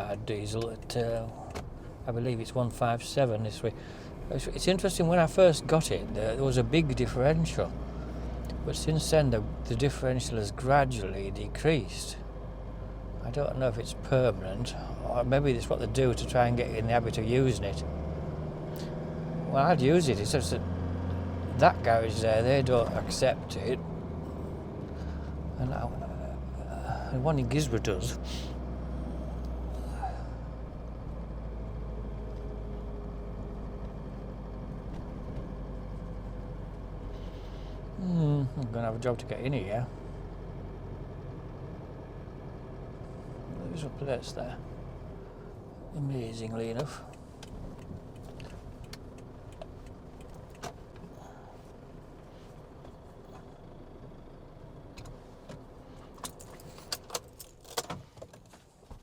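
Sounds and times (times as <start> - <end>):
engine and road noise drone: 0.0 - 59.0
car keys jangling: 56.0 - 58.5.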